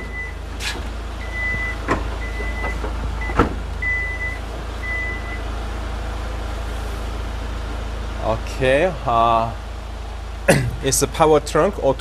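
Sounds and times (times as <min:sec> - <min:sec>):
tailgate warning beeps: 0:00.0 - 0:05.4
steady low rumble: 0:00.0 - 0:12.0.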